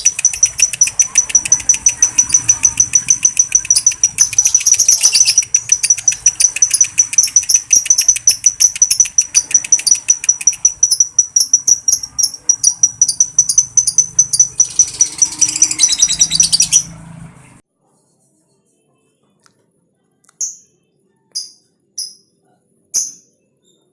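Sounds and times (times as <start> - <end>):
bird shrill chattering: 0.0 - 16.9.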